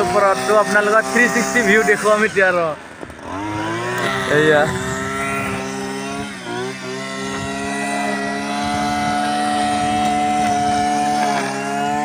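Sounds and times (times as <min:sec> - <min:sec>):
engine droning: 0:00.0 - 0:12.0.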